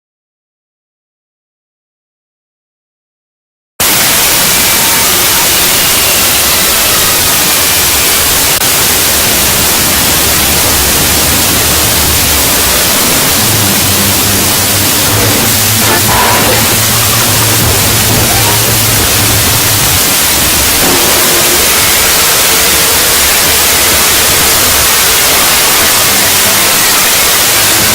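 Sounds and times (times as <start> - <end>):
loud static hiss: 3.8 - 27.9
faint low drone: 8.0 - 26.6.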